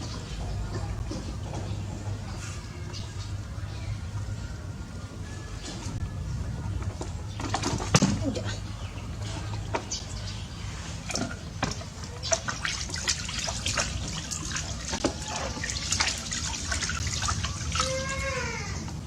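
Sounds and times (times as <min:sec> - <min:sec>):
bathwater splashing and dripping: 0:09.2 - 0:18.5.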